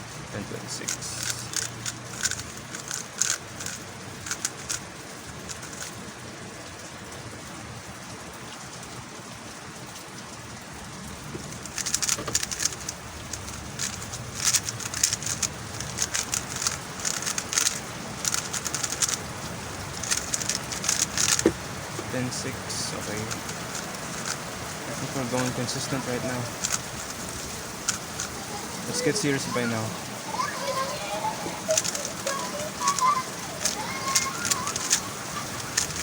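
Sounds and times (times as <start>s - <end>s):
puzzle cube plastic clicking: 0.8s - 6.0s, 11.5s - 29.9s, 31.6s - 36.0s.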